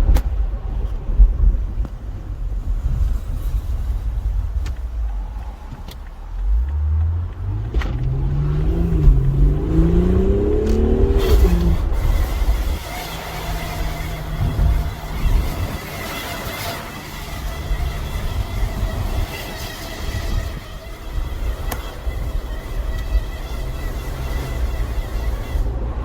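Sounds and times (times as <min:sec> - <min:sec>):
low rumble: 0:00.0 - 0:16.0
steady low hum: 0:00.0 - 0:26.0
rising and falling pitched whine: 0:04.6 - 0:26.0.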